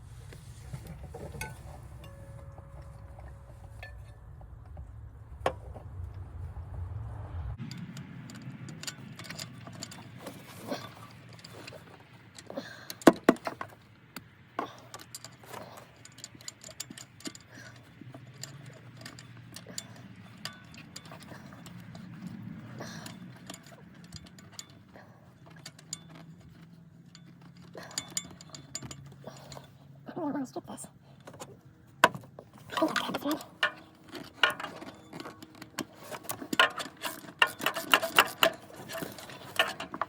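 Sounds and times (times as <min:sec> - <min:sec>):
low steady hum: 0:00.0 - 0:14.0
metal socket clicking on engine: 0:07.6 - 0:29.8, 0:31.2 - 0:40.0.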